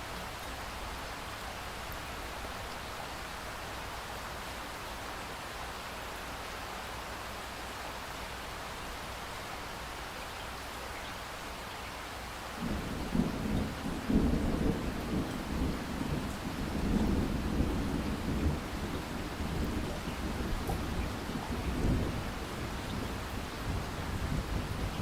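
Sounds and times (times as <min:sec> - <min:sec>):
steady rain: 0:00.0 - 0:25.0
thunder rumbling: 0:12.6 - 0:25.0.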